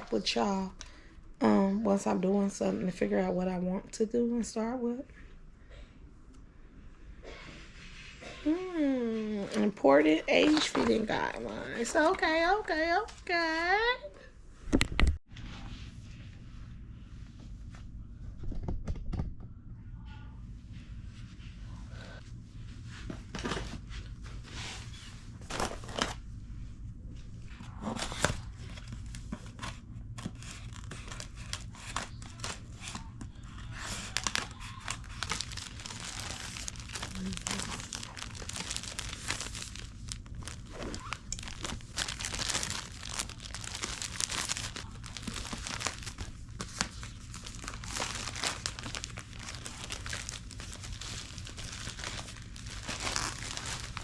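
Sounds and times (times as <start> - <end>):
steady low hum: 0.0 - 54.0
packaging crinkling and tearing: 25.4 - 26.2, 27.8 - 54.0.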